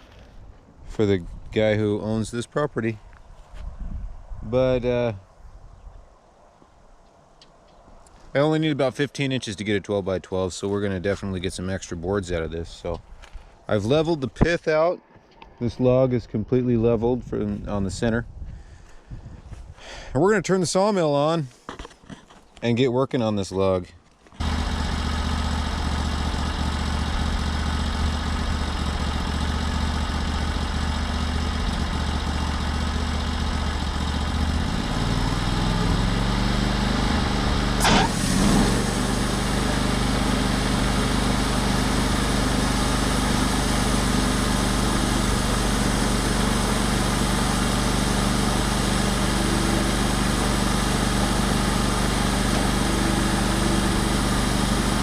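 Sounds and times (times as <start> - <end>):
sawmill engine running: 24.4 - 55.0.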